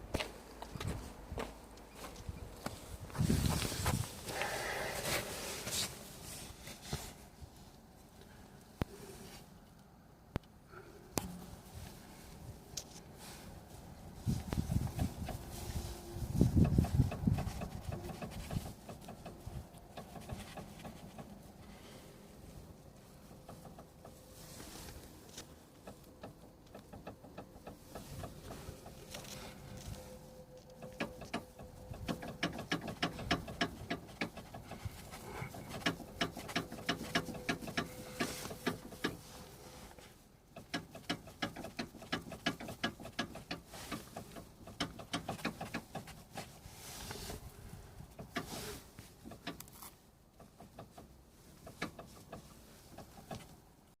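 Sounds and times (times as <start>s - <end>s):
car suspension rattling knocks: 16.6s - 21.4s, 25.8s - 29.0s, 30.8s - 39.3s, 40.5s - 46.4s.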